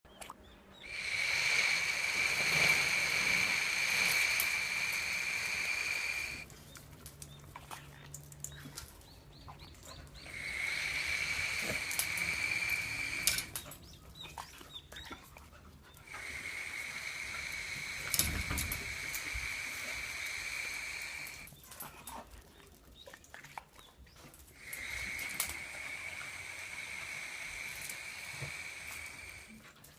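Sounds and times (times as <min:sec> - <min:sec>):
light clicks and ticks: 0:11.2 - 0:13.8.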